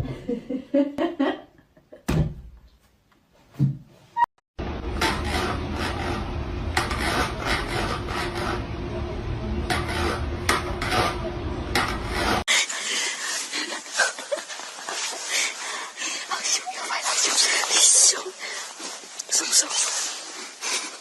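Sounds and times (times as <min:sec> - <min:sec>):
rough rasping and scratching: 0:04.9 - 0:08.8, 0:09.7 - 0:12.5
sharp scrape strokes: 0:05.0 - 0:08.7, 0:11.8 - 0:21.0.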